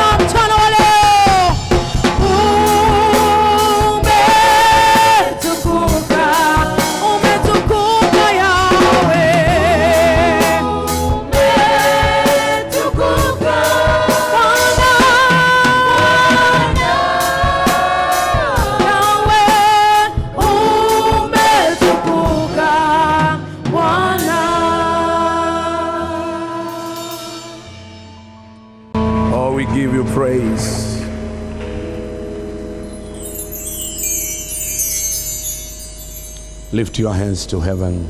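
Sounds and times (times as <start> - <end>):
band with drums: 0.0 - 24.5
gospel choir singing: 0.0 - 27.7.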